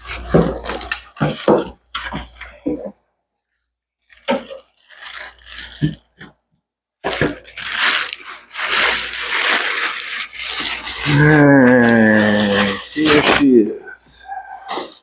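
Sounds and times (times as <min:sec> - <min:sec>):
packaging crunching and rustling: 0:00.0 - 0:02.8, 0:04.0 - 0:06.4, 0:07.0 - 0:13.8.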